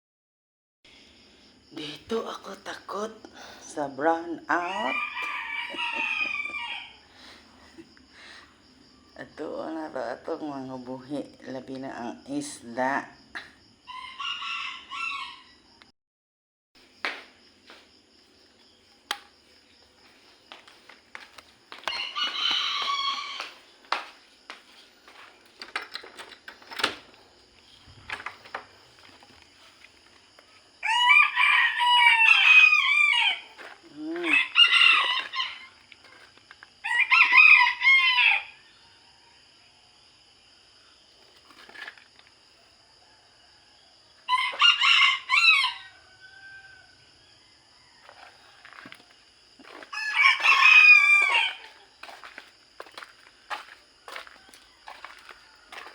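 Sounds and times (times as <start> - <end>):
roosters crowing: 4.5 - 7.3, 13.9 - 15.6, 21.7 - 23.8, 30.6 - 39.2, 42.7 - 55.9.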